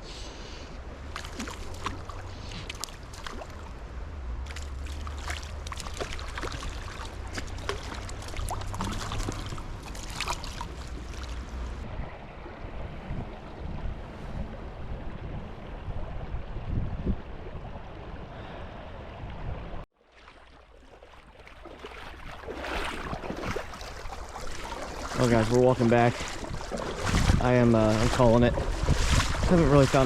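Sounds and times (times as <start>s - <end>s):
wind rumbling on microphone: 0.0s - 19.8s, 21.8s - 30.0s
stream water running: 0.1s - 30.0s
water splashing close by: 0.9s - 13.1s, 20.0s - 30.0s.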